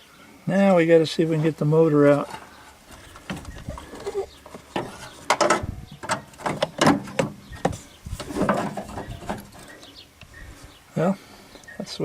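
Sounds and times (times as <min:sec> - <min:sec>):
metal clunks and rattles: 0:02.2 - 0:09.8.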